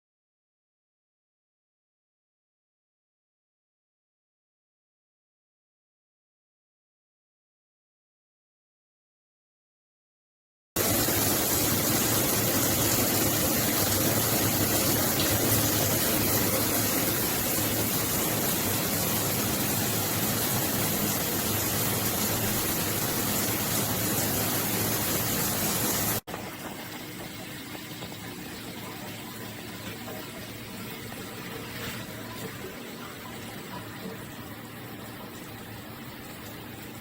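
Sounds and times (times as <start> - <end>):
shower head spraying water: 10.8 - 32.6.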